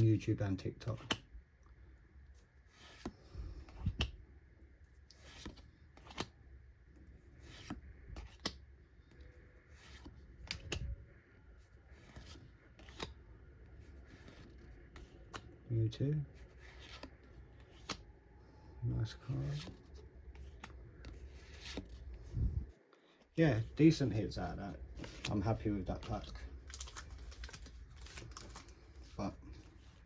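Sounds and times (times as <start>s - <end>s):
trading cards rustling and clicking: 2.4s - 4.2s, 5.0s - 6.4s, 7.3s - 11.1s, 11.7s - 15.6s, 16.2s - 18.1s, 18.9s - 22.4s, 23.0s - 30.0s.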